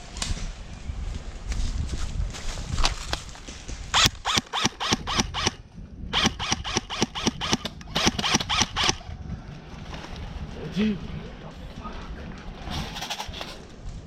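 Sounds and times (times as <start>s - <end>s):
airsoft gun shots: 6.2s - 9.0s.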